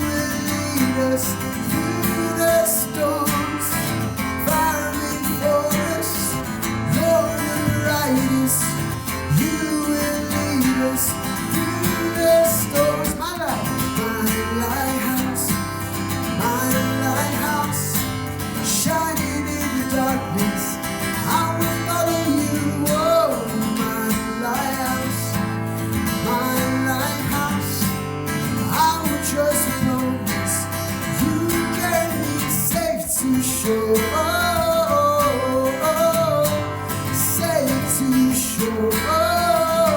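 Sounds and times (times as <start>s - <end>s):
strummed acoustic guitar: 0.0s - 39.9s.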